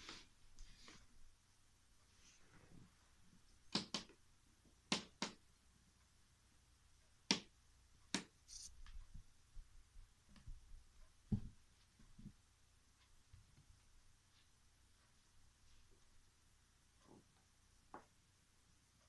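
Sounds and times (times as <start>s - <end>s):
taps and clicks on cardboard: 3.7s - 4.2s, 4.9s - 5.4s, 7.2s - 7.5s.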